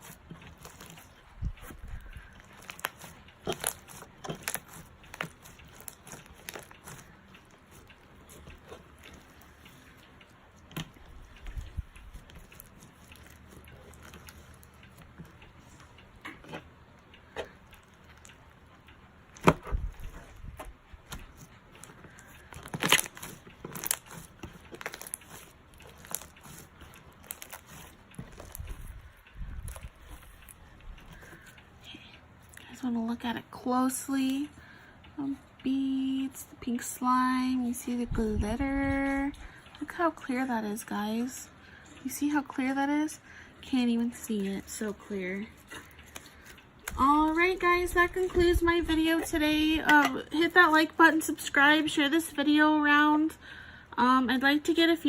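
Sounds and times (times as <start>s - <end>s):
slime squished by hand: 2.4s - 7.0s, 21.8s - 29.0s.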